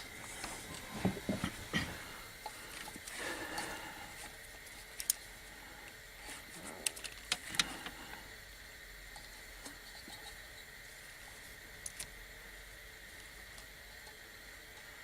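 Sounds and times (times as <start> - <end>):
rubber hoses rustling: 0.0 - 5.0.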